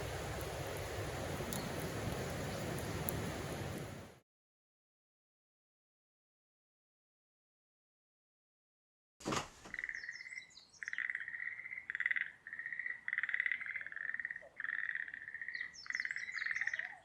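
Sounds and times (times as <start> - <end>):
frogs calling in pulsed trills: 9.8 - 17.0.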